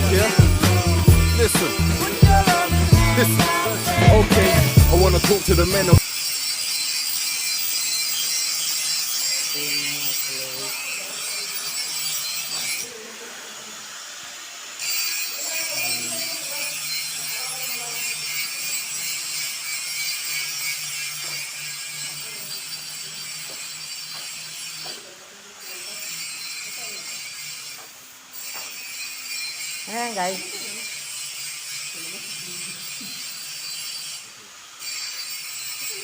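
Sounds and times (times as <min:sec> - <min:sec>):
welding arc crackling hiss: 0:00.0 - 0:36.0.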